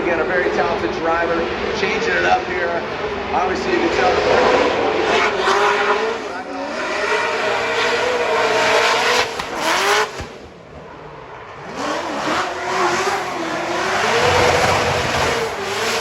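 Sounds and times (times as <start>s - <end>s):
car engine at high revs: 3.8s - 16.0s
tyres squealing: 13.4s - 16.0s.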